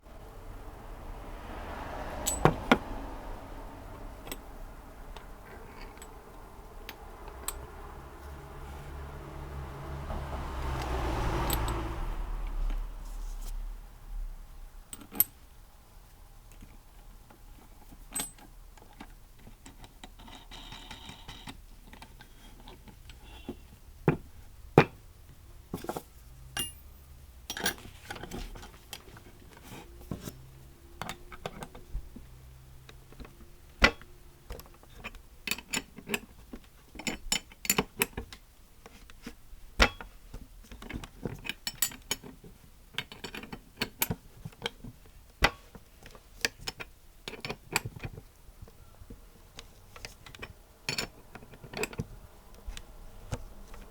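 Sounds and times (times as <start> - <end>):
metal tools clinking and tapping: 2.2 - 2.8, 25.8 - 29.1.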